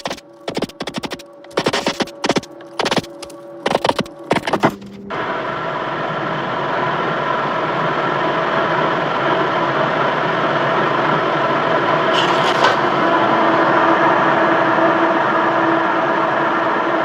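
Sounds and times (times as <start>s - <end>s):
motor-driven machine running: 0.0s - 6.6s
brief high hiss: 12.1s - 12.8s.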